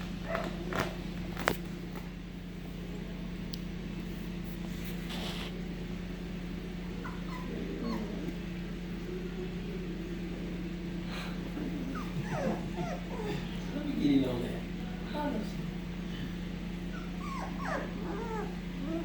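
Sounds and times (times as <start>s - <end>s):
steady low hum: 0.0s - 19.0s
puppies whimpering: 0.2s - 1.0s, 6.8s - 14.3s, 16.7s - 19.0s.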